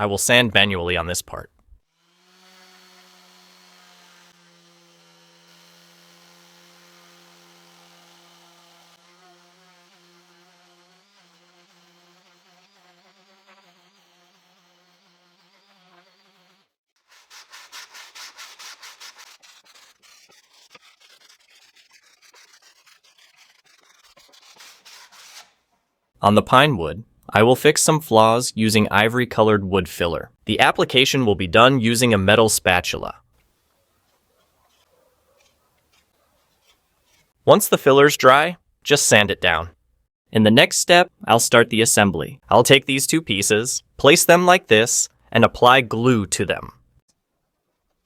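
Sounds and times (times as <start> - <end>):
electric orbital sander running: 2.0 - 16.7
sandpaper rubbing on wood: 6.5 - 25.6.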